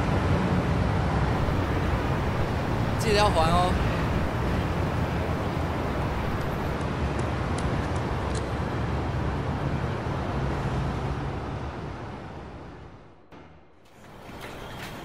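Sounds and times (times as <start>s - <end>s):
road traffic noise: 0.0s - 15.0s
low engine hum: 0.8s - 9.4s.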